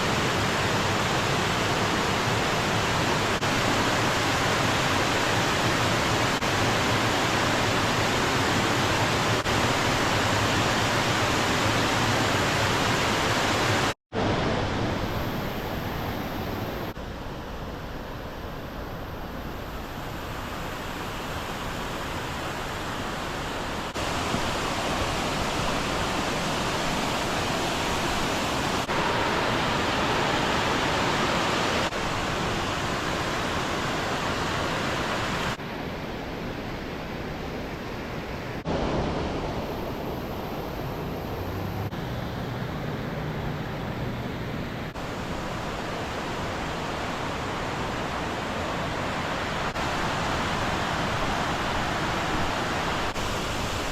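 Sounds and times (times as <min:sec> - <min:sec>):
waterfall rushing: 0:00.0 - 0:17.0, 0:20.0 - 0:35.6, 0:44.9 - 0:53.9.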